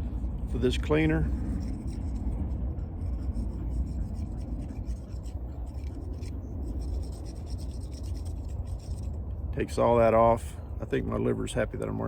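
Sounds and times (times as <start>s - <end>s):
dauber scratching on pipe: 0.0s - 9.2s
steady low rumble: 0.0s - 12.0s.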